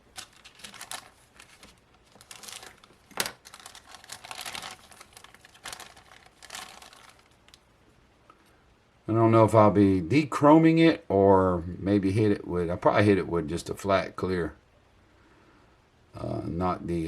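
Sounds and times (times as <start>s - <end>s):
plastic bag crinkling: 0.0s - 7.6s.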